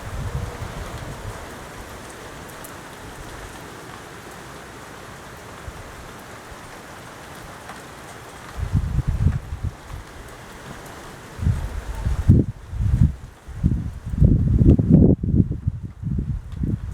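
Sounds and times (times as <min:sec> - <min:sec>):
low thunder rumbles: 0:00.0 - 0:02.5, 0:08.6 - 0:10.1, 0:11.4 - 0:16.9
steady rain falling: 0:00.0 - 0:16.9.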